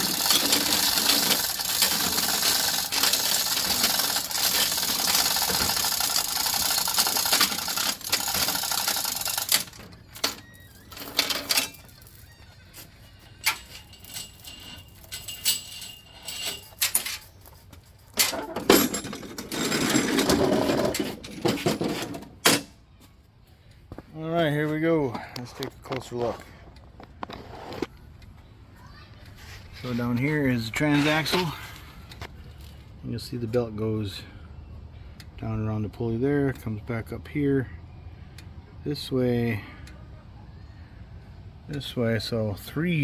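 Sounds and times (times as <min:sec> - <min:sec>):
mechanical ratcheting rattle: 0:00.0 - 0:12.6, 0:13.4 - 0:17.5.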